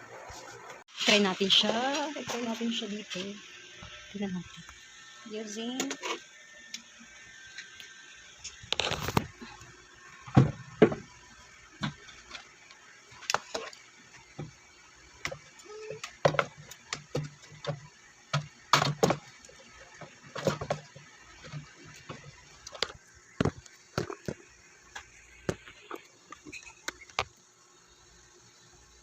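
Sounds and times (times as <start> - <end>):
plastic parts clicking and knocking: 15.2 - 27.4.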